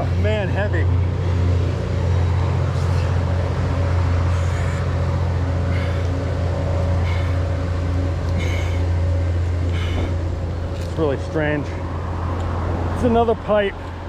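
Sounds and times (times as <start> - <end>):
low engine drone: 0.0 - 14.0.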